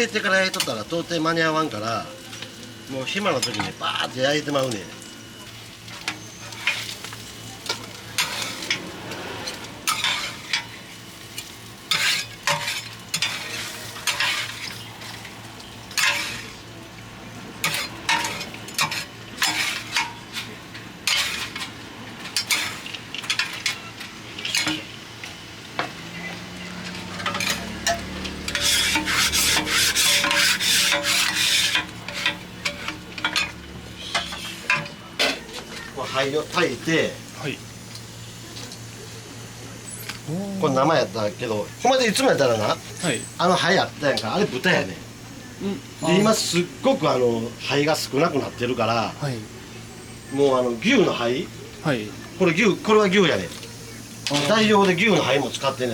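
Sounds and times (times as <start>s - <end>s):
meat sizzling on a griddle: 0.0s - 55.9s
metal spatulas scraping a plate: 8.2s - 10.7s, 11.9s - 15.2s, 15.9s - 16.5s, 17.6s - 21.7s, 27.1s - 35.4s.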